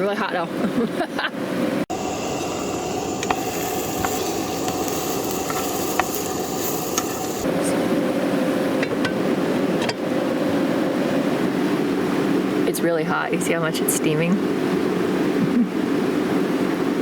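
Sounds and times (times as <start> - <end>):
cooking appliance hissing: 1.9 - 7.8
faint hum: 1.9 - 17.0.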